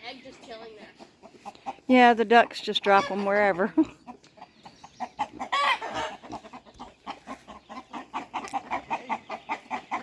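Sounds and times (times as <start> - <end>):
chickens clucking: 0.0 - 10.0.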